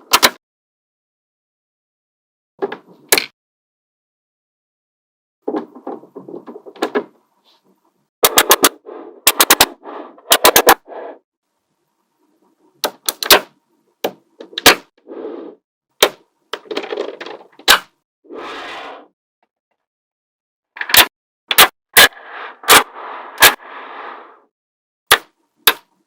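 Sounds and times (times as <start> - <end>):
magnetic balls snapping together: 12.8 - 14.8, 25.1 - 25.9.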